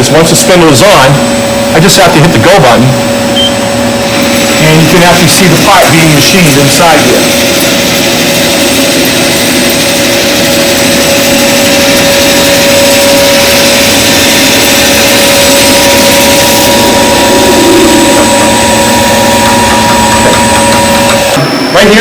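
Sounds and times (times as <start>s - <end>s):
lathe machining with constant whine: 0.0s - 22.0s.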